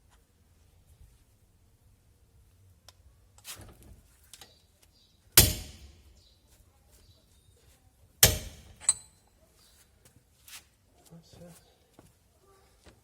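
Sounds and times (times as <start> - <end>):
sharp metallic knocks: 5.4 - 6.0, 8.2 - 9.1
metal tools clicking: 8.6 - 9.2.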